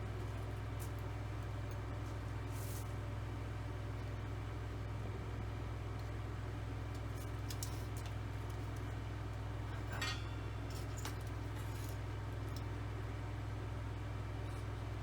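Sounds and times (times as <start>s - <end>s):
light metallic clinks: 9.7s - 12.7s.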